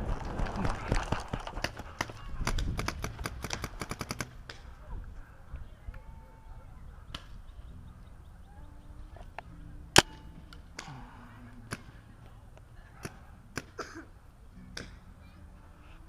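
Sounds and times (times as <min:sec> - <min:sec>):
paintball marker shots: 0:01.4 - 0:04.7, 0:10.0 - 0:10.9.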